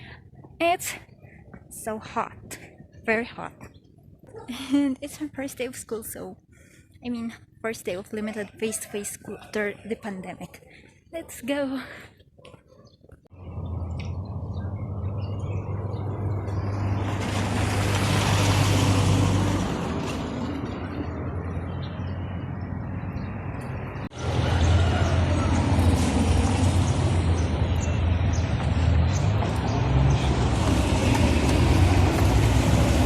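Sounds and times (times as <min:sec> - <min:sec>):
road noise: 0:00.0 - 0:33.0.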